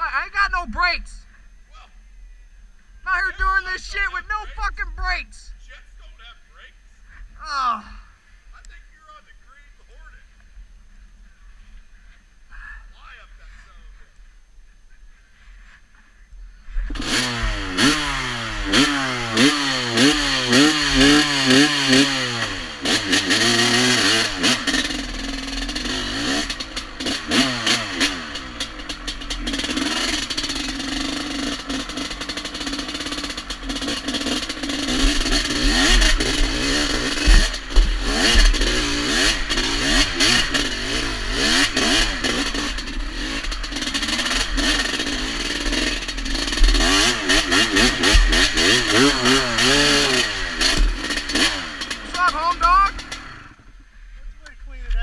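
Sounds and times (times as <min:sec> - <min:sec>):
small motorcycle engine revving: 0:16.8 - 0:53.7.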